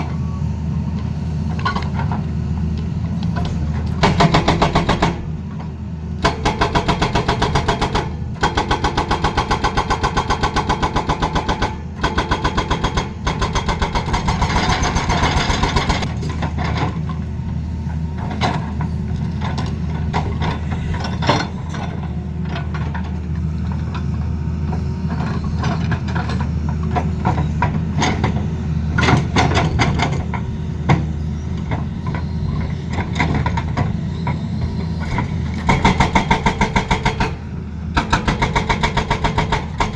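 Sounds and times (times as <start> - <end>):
diesel engine drone: 0.0 - 39.9
excavator hammering: 4.0 - 5.6, 6.2 - 17.0, 35.0 - 39.9.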